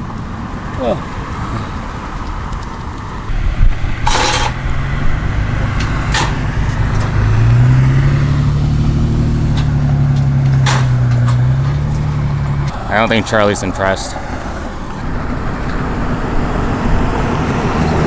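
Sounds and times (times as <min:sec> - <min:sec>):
vehicle engine humming: 0:00.0 - 0:18.0.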